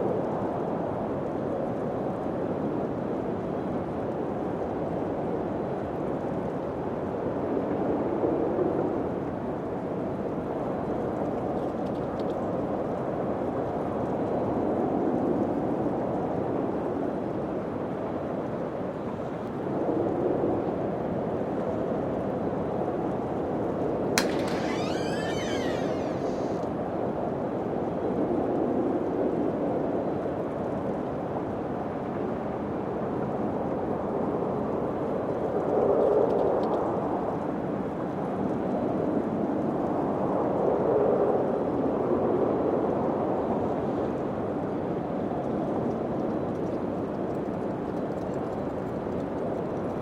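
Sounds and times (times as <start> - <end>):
faint click: 24.2 - 26.7.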